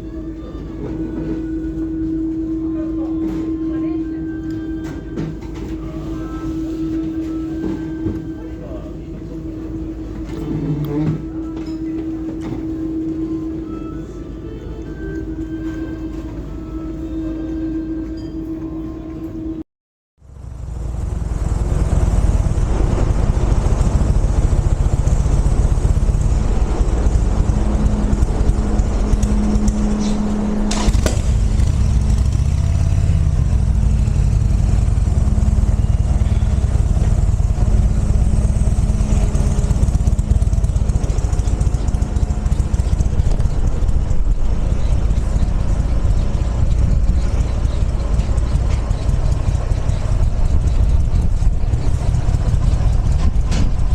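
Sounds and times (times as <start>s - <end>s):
vehicle engine running: 20.2s - 53.9s.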